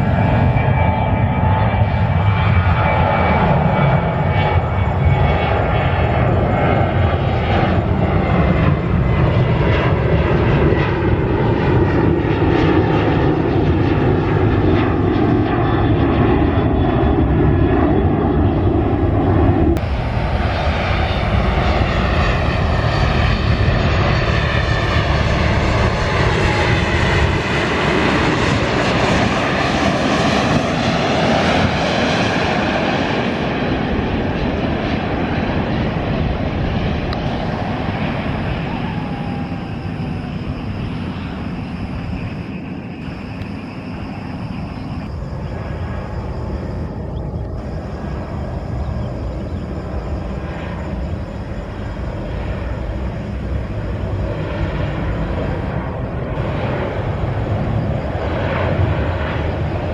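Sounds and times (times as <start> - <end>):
jet airliner engines roaring: 0.0 - 59.9.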